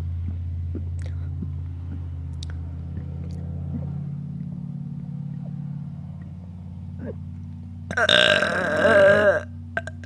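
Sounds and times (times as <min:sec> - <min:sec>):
steady low hum: 0:00.0 - 0:10.0
mouth clicks: 0:00.3 - 0:03.9
man burping: 0:07.9 - 0:10.0.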